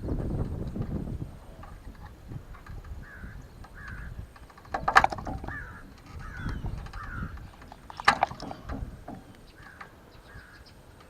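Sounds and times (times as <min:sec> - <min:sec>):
bird calling: 0:02.6 - 0:11.0.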